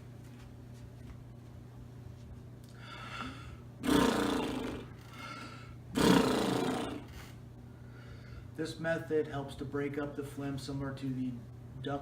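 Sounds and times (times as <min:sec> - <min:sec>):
man blowing through pursed lips: 0:02.7 - 0:08.5.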